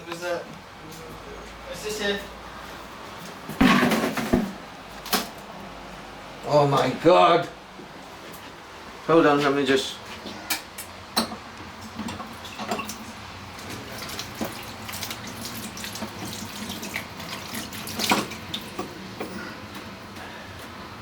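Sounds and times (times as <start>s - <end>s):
knocks and clatter of handling: 3.5s - 5.3s.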